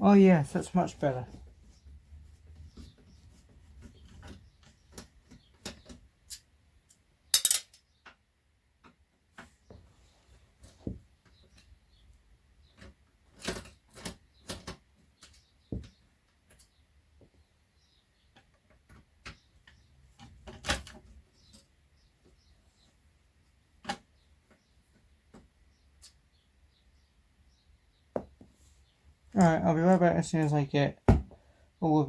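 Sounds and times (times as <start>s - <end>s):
loose screws clattering down: 7.4s - 7.8s
screwdriver clicking on metal screws: 7.4s - 7.8s.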